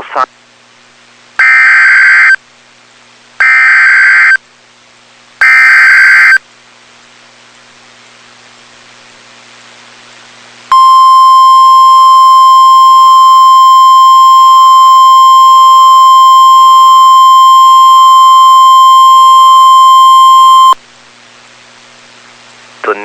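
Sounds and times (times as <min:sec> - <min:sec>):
faint radio hiss: 0:00.0 - 0:01.4, 0:14.2 - 0:23.0.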